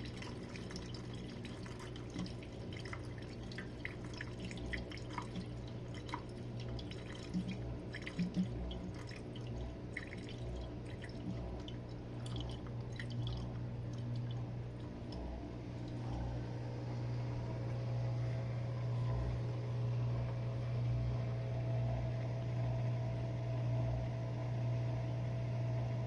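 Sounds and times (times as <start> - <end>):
water dripping and splashing: 0.0 - 15.2
dishwasher motor hum: 0.0 - 26.0.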